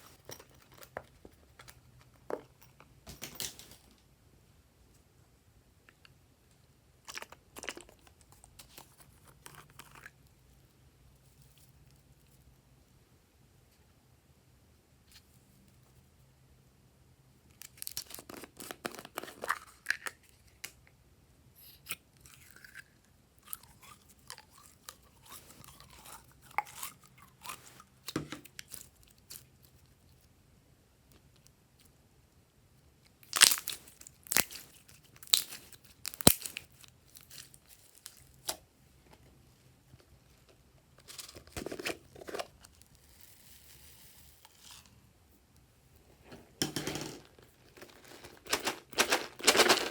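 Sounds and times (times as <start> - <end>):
slime squishing and crackling: 33.2 - 38.5
slime popping and snapping: 35.2 - 36.6.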